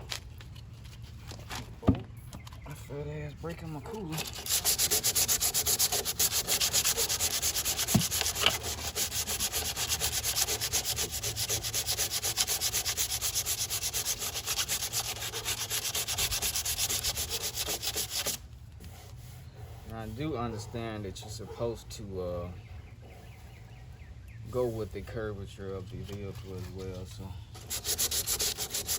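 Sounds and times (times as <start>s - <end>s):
sandpaper rubbing on filler: 4.2s - 21.8s, 24.4s - 25.2s, 25.9s - 28.9s.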